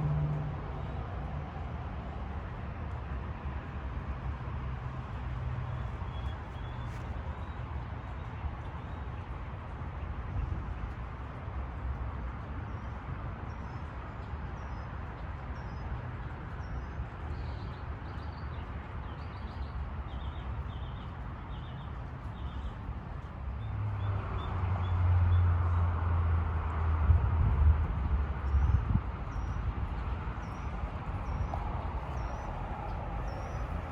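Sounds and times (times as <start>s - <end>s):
low outdoor rumble: 21.0s - 33.9s.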